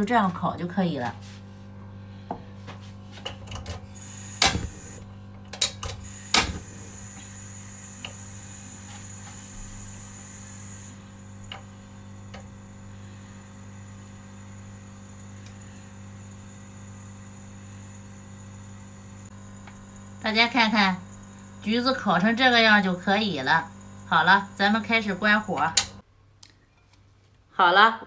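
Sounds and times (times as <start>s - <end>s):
steady low hum: 0.0s - 26.4s.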